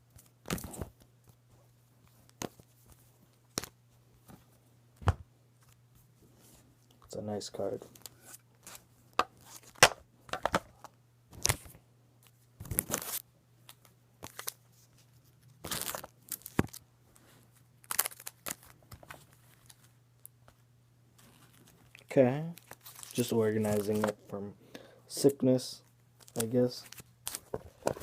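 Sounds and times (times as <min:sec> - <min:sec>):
plastic packaging crinkling: 0:14.2 - 0:16.8, 0:17.8 - 0:20.0, 0:21.2 - 0:24.2.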